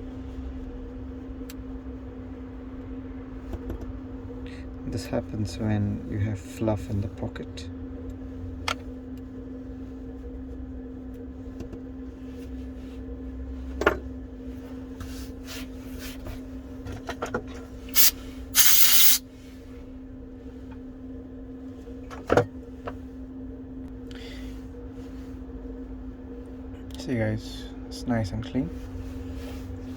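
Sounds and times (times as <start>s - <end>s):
compressed air hissing sprays: 18.0s - 19.2s
steady hum: 18.0s - 19.2s.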